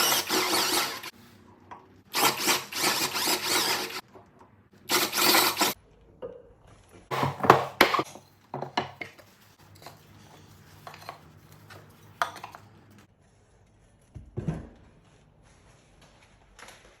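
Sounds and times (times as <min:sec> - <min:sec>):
tools and wood clinking: 0:07.1 - 0:12.8.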